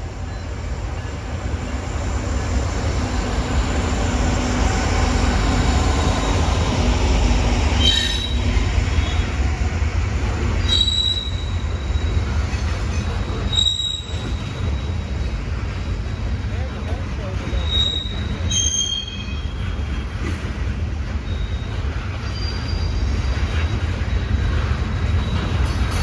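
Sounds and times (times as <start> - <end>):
train wheels rumbling on rails: 0.0 - 26.0
high wheel squeals: 7.7 - 9.4, 10.6 - 15.1, 17.5 - 19.6.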